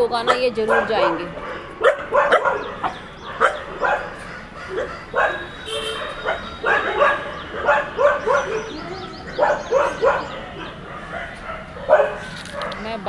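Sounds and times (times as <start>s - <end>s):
dogs barking: 0.0s - 13.0s.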